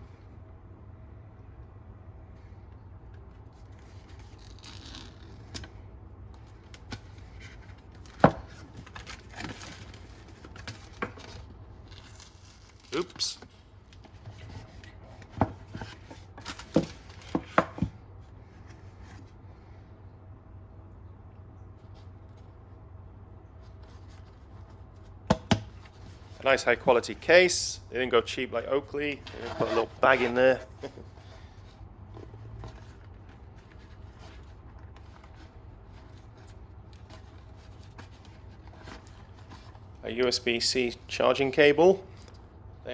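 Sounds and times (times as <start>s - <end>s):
faint steady hum: 0.0s - 42.9s
knocks and taps on packaging: 25.3s - 25.7s.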